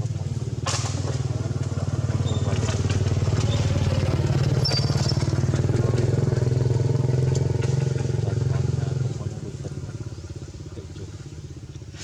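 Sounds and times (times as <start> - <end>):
small engine running: 0.0 - 12.0.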